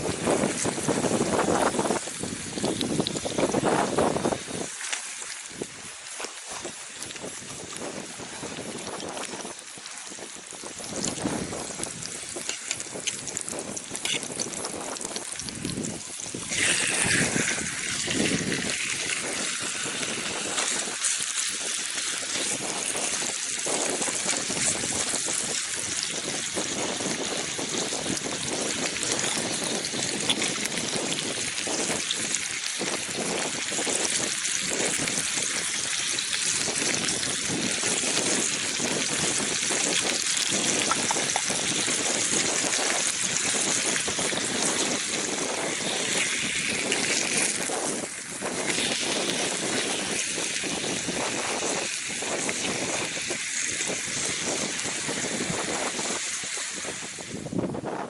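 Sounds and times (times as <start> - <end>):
water rushing and trickling: 0.0 - 58.0.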